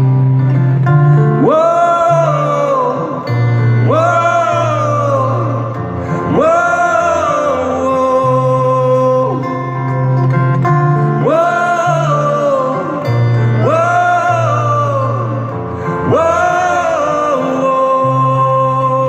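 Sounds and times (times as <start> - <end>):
low bass notes: 0.0 - 19.0.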